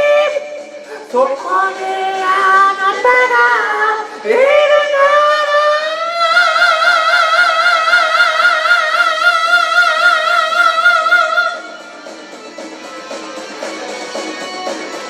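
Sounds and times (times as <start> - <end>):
person singing a long high note: 0.0 - 12.0
karaoke backing track: 0.0 - 15.0.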